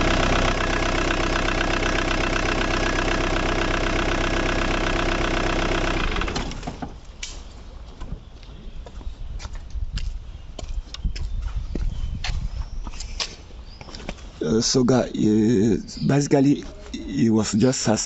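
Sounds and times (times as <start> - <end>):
car engine idling: 0.0 - 7.0.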